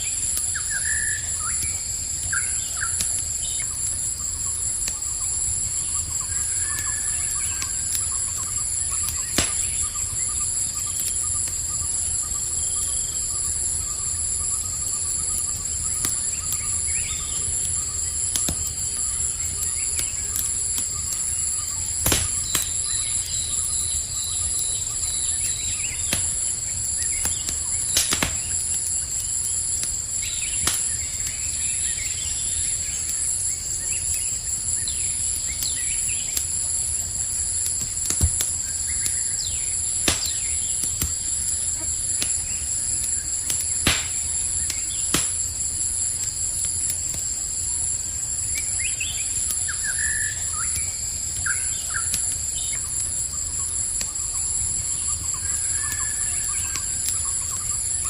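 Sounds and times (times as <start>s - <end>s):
campfire crackling and popping: 0.0s - 58.0s
crickets trilling: 0.0s - 58.0s.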